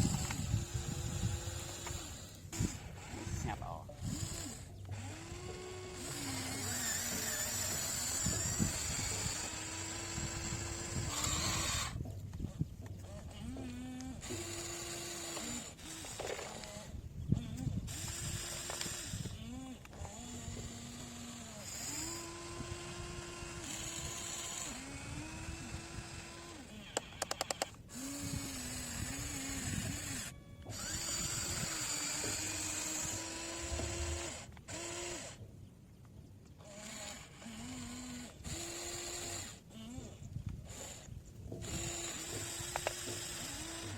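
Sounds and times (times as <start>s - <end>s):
electric motors whining: 0.0s - 43.9s
sharp clicks: 26.5s - 35.4s.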